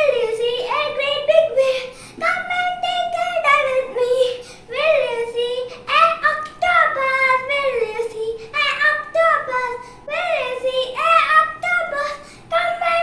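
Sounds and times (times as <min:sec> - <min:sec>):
child singing: 0:00.0 - 0:13.0.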